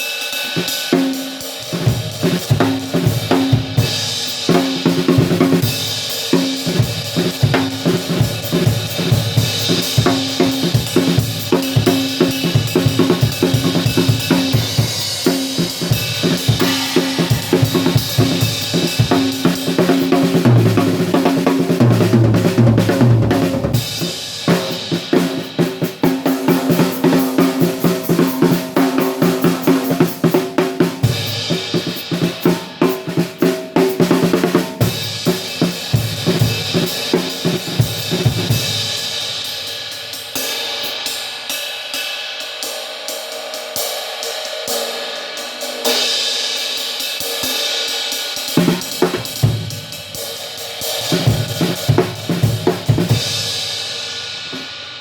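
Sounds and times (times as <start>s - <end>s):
drum kit playing: 0.0s - 55.0s
crash-ride cymbal strokes: 14.7s - 19.6s.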